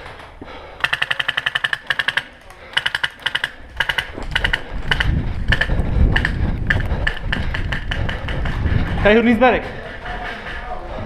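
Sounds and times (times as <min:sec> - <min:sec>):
airsoft guns firing automatic: 0:00.8 - 0:08.5.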